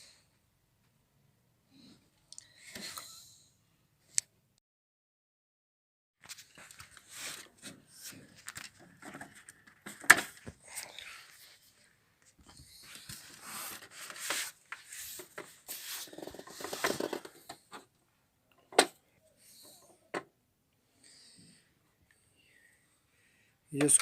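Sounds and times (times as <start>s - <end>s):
plastic casing clicks and scrapes: 13.0s - 17.9s.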